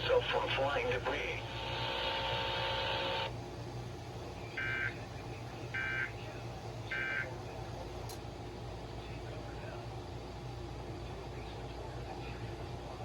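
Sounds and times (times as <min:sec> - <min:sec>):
radio hiss and hum: 0:00.0 - 0:03.4.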